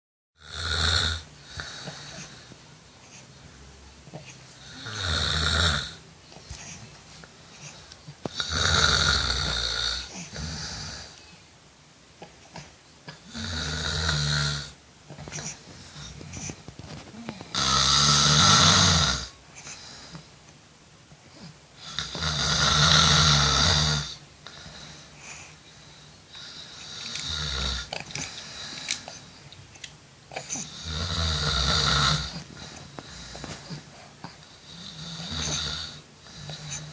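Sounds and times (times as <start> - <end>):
person snoring: 0.4 - 2.5, 4.2 - 6.0, 7.6 - 11.2, 13.1 - 20.2, 21.4 - 25.1, 26.3 - 29.2, 30.3 - 36.9.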